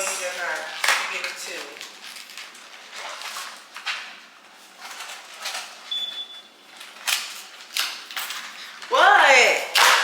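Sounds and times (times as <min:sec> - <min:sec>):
package rustling: 0:00.0 - 0:06.0.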